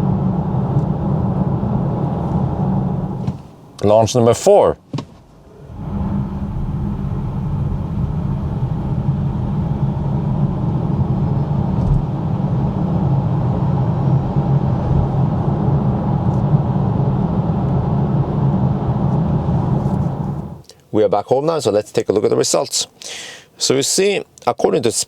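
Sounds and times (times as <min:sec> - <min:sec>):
road and tyre rumble: 0:00.0 - 0:03.7, 0:05.3 - 0:20.6.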